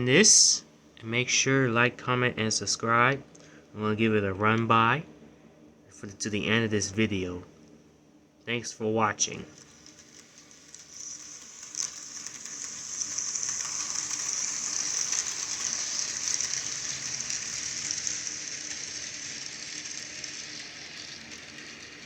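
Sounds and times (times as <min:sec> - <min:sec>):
model train rattling on track: 0:09.5 - 0:22.0.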